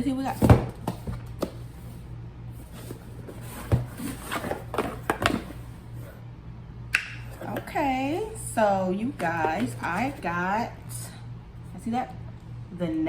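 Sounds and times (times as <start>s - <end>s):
steady low hum: 0.0s - 13.0s
cardboard box knocks and scrapes: 2.6s - 5.7s.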